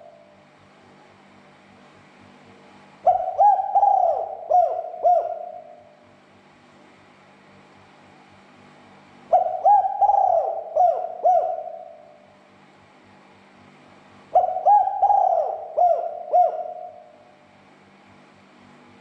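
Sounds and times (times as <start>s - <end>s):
dove cooing: 0.0s - 0.3s, 3.0s - 6.0s, 9.3s - 12.3s, 14.3s - 17.3s.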